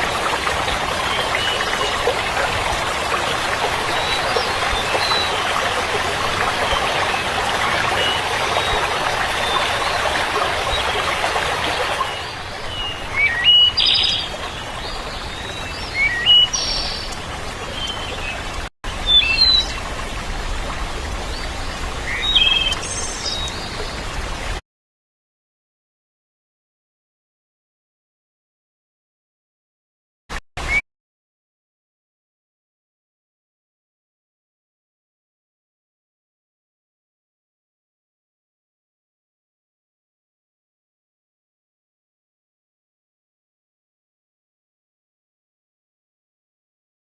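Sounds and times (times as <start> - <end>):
running water: 0.0 - 24.6
birds chirping: 0.8 - 19.9, 21.2 - 24.1.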